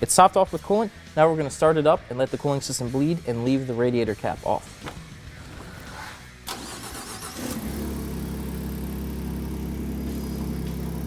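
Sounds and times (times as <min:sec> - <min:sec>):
truck engine starting and idling: 0:02.6 - 0:11.0
ignition click: 0:03.8 - 0:07.8.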